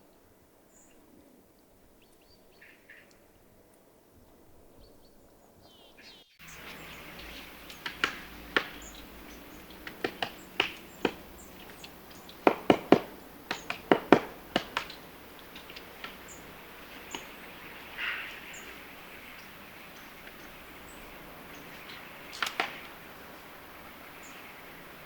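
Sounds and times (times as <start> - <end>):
woodpecker pecking: 6.4 - 25.0.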